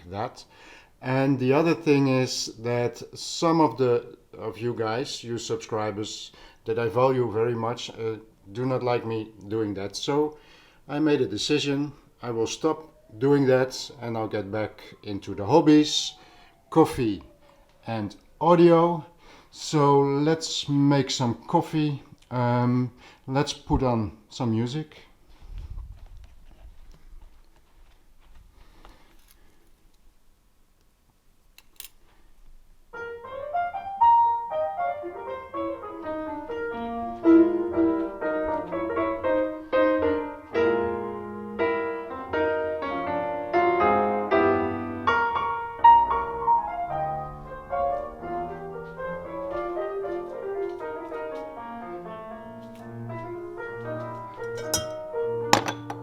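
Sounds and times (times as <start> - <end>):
piano music over stereo: 32.9 - 56.0.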